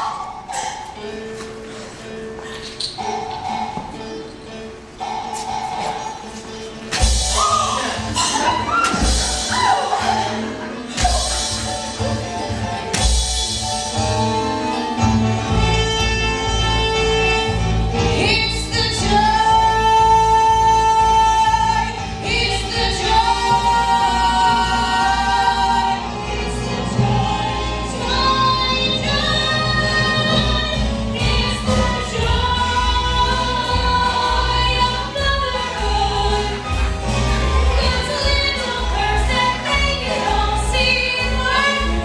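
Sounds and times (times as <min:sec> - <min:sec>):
instrumental accompaniment: 0:00.3 - 0:42.0
group singing: 0:21.8 - 0:42.0.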